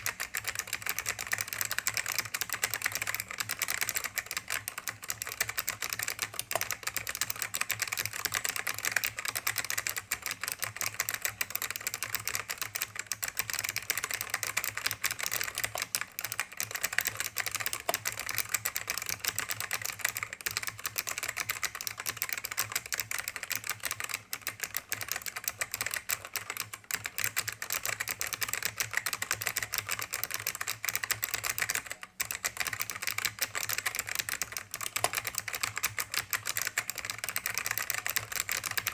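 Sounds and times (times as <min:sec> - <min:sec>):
fast keyboard typing: 0:00.0 - 0:38.9.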